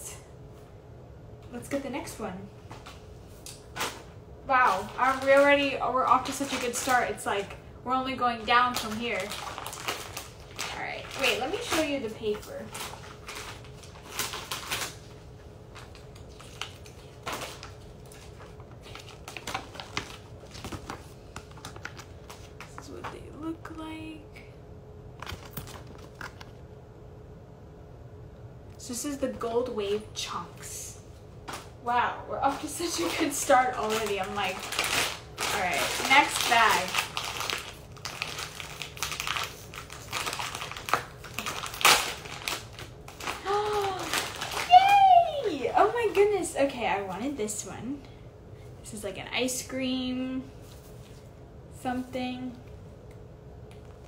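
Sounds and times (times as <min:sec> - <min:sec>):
packaging bag crackling: 0:02.9 - 0:07.6, 0:08.2 - 0:22.9, 0:25.2 - 0:26.6, 0:32.4 - 0:46.3
paper crinkling and rustling: 0:03.7 - 0:07.5, 0:08.3 - 0:23.2, 0:25.2 - 0:26.6, 0:32.4 - 0:46.3.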